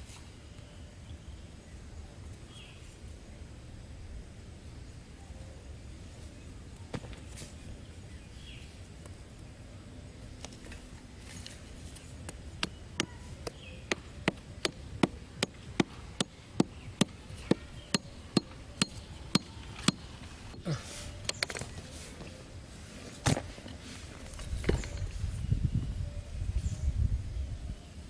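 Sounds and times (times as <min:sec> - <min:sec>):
sharp strikes on wood: 0:12.6 - 0:20.7.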